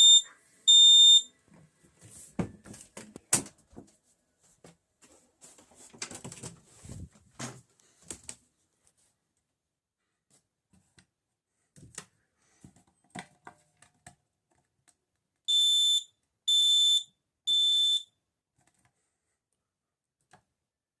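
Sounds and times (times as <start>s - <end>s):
smoke alarm beeping: 0.0s - 1.3s, 15.5s - 18.1s.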